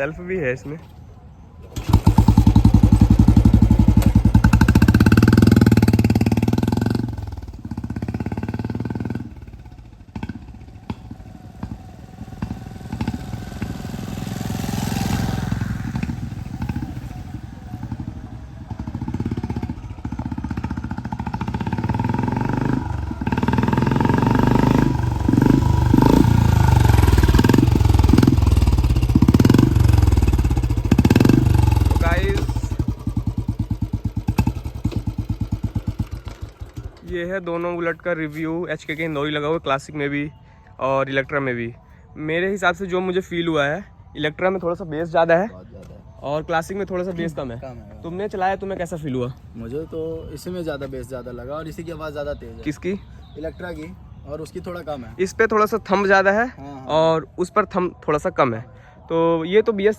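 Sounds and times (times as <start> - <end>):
electric starter: 1.8 - 5.8
motorcycle engine thumping: 1.8 - 37.3.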